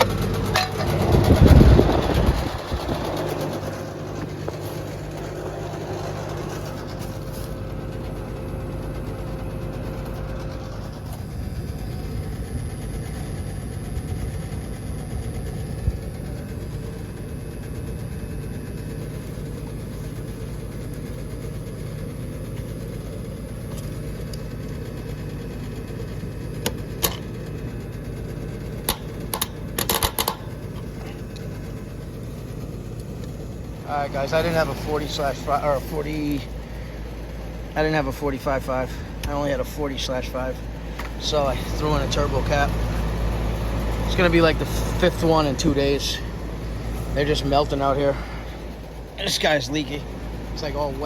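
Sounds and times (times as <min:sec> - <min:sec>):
air conditioner humming: 0:00.0 - 0:51.0.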